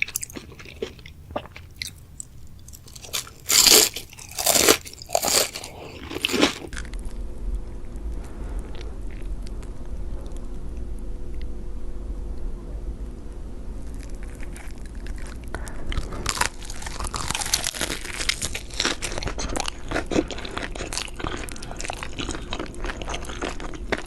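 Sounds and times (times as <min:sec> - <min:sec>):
crunchy chewing: 0:00.0 - 0:07.2, 0:13.8 - 0:24.0
steady low hum: 0:00.0 - 0:24.0.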